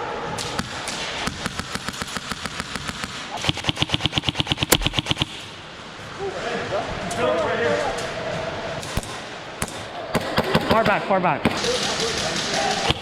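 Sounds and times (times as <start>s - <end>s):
loud crack: 0.4s - 5.8s, 8.8s - 13.0s
airsoft gun single shots: 0.5s - 5.5s
airsoft full-auto burst: 0.5s - 5.6s, 9.0s - 13.0s.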